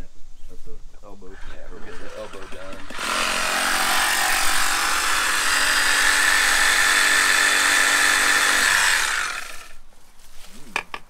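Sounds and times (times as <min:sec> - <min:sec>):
electric saw cutting pipe: 0:01.4 - 0:09.8.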